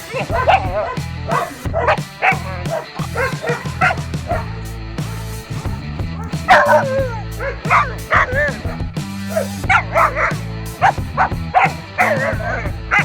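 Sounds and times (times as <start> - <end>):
background music with low notes: 0.0 - 13.0
dog barking and yelping: 0.0 - 13.0.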